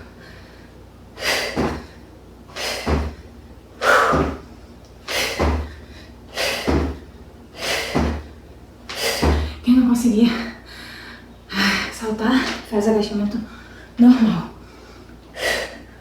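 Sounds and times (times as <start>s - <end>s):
feet thudding on floor: 1.4s - 3.2s, 3.8s - 4.5s, 5.1s - 7.1s, 7.7s - 9.6s
woman exhaling hard: 3.8s - 4.4s.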